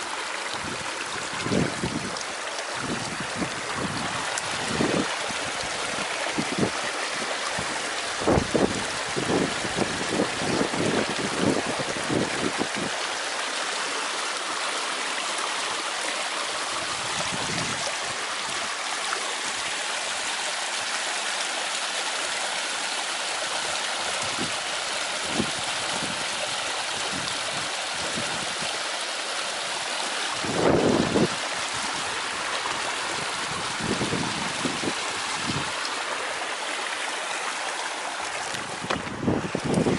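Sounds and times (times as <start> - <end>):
small waterfall splashing: 0.0 - 39.9
wind rumble on microphone: 0.5 - 13.0, 16.8 - 18.7, 25.2 - 28.7, 30.4 - 35.8, 38.5 - 39.9.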